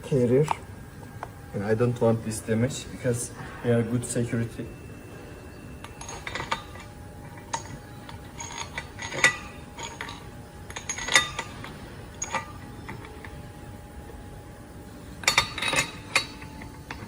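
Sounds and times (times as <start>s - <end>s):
steel parts clinking: 4.1s - 17.0s.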